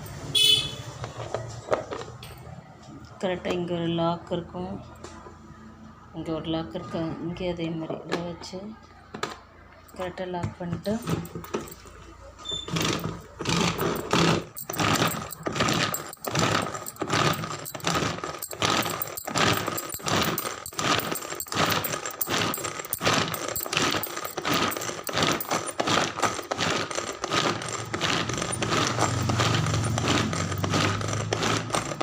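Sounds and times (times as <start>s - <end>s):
pull-cord chopper whirring: 12.7s - 32.0s.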